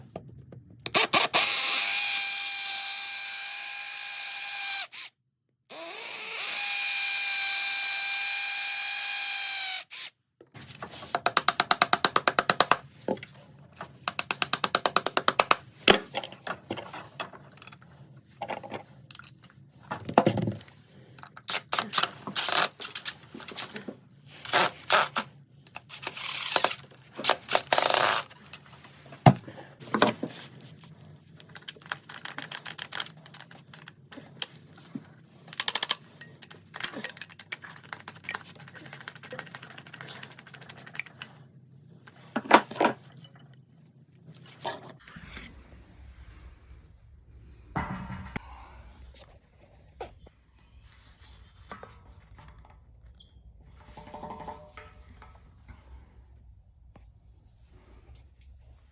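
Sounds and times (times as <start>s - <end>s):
power drill running: 0.9s - 5.1s, 5.7s - 10.1s.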